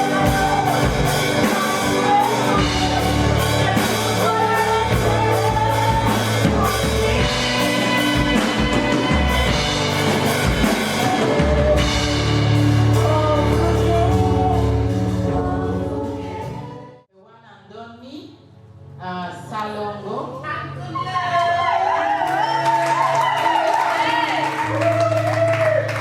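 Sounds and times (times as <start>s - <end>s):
drum kit: 0.0s - 16.7s
person singing: 0.0s - 17.0s
gospel worship music: 0.0s - 17.1s, 20.7s - 26.0s.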